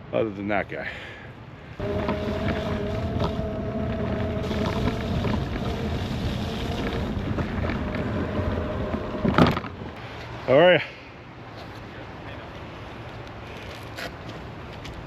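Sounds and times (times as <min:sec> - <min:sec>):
rushing wind: 0:01.4 - 0:10.5
electric bike motor whine: 0:01.8 - 0:09.7
tyre noise: 0:01.8 - 0:10.0.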